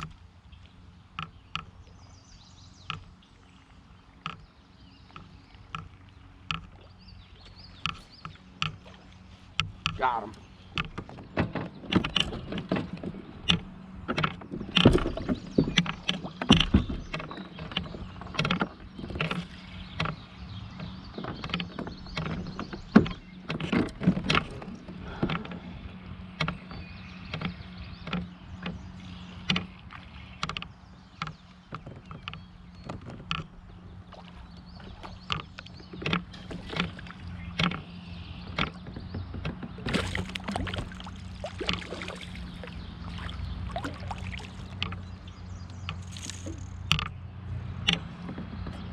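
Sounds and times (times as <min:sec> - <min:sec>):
knocks and taps on kayak: 0:00.0 - 0:00.2, 0:01.1 - 0:01.9, 0:02.8 - 0:03.3, 0:04.1 - 0:47.2, 0:47.8 - 0:48.9
water splashes: 0:34.0 - 0:47.1.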